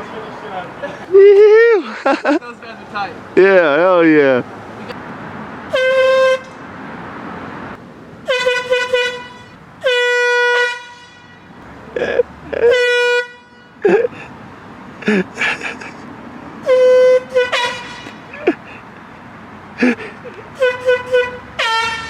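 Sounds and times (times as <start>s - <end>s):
air horn blasts: 5.7s - 6.6s, 8.2s - 11.6s, 12.6s - 13.8s, 16.6s - 18.3s, 20.6s - 22.0s.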